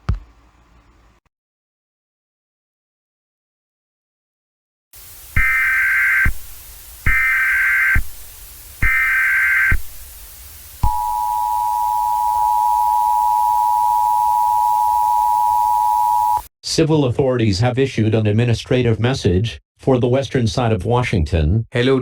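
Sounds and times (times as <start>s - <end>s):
harsh digital data bursts: 5.1s - 12.1s
two-tone attention signal: 10.8s - 16.5s.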